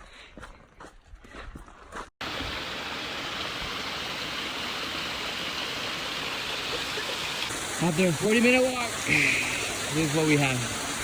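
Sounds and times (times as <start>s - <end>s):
waterfall rushing: 2.2s - 11.0s.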